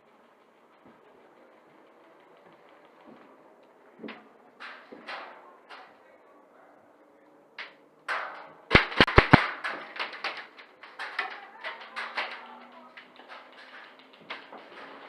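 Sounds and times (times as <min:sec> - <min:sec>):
small clicks and knocks: 0:07.6 - 0:15.0
loud sharp knocks: 0:08.8 - 0:09.4.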